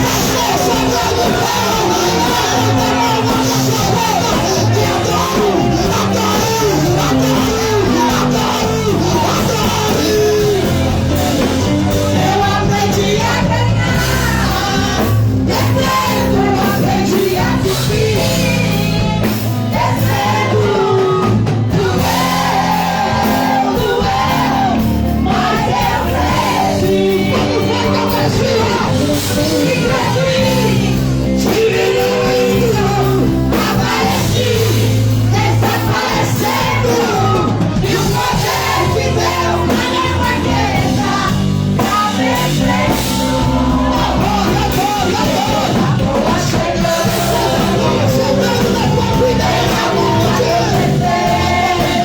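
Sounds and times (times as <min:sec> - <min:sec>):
people shouting: 0:00.0 - 0:16.7
loud music: 0:00.0 - 0:52.0
people singing: 0:00.0 - 0:52.0.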